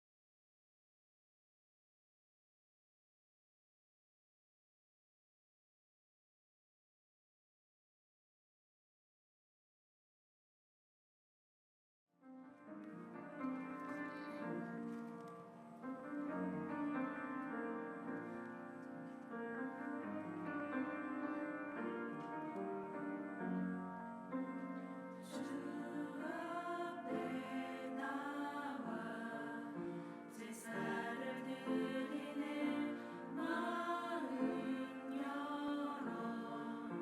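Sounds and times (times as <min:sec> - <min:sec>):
piano accompaniment: 0:12.2 - 0:37.0
choir singing a hymn: 0:25.2 - 0:37.0.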